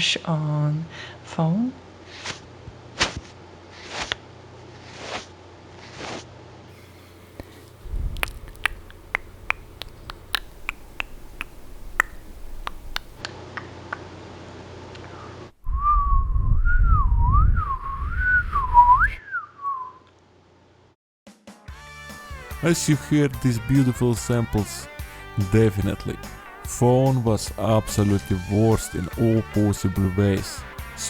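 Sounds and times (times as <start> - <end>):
breath rumbling on microphone: 6.8 - 13.2, 15.7 - 19.2
faint hiss: 6.8 - 13.2
person whistling a tune: 15.7 - 20.0.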